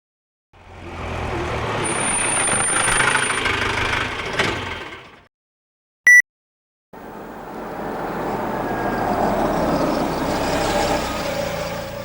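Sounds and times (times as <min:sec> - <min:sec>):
car driving slowly: 0:07.0 - 0:12.0.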